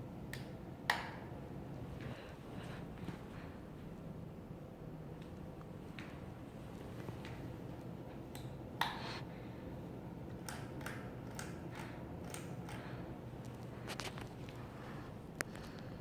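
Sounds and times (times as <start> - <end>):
ceiling fan hum: 0.0 - 16.0
fan blades clicking: 10.2 - 14.6.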